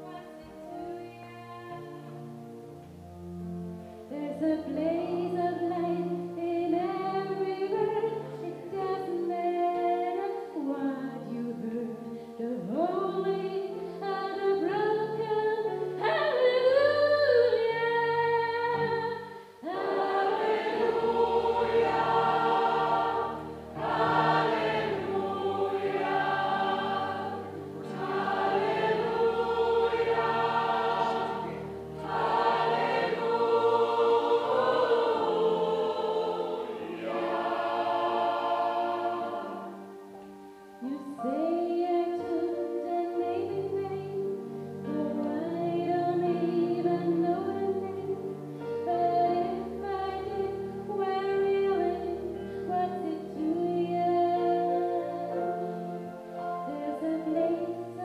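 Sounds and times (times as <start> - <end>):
gospel choir singing: 15.6 - 40.2, 44.8 - 58.0.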